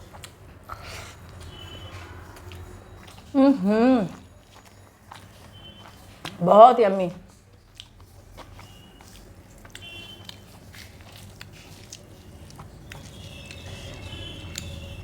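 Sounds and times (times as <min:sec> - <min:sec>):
person chewing food: 0:00.0 - 0:06.4, 0:07.2 - 0:15.0
mouth clicks and smacks: 0:07.3 - 0:15.0.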